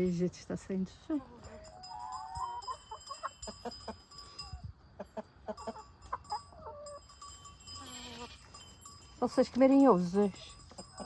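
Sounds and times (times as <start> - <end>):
hens clucking: 1.0 - 4.1, 4.8 - 7.2, 10.3 - 11.0.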